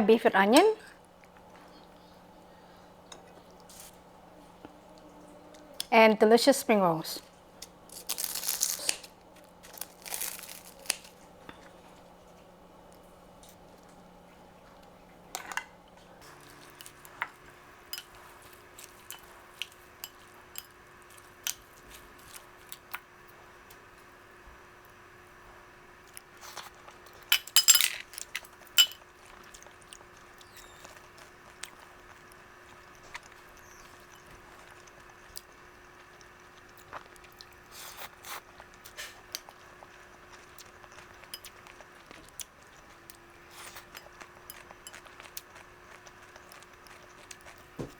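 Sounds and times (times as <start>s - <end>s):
faint steady hum: 0.0s - 47.9s
utensils and dishes clinking: 16.2s - 20.8s, 27.3s - 29.1s.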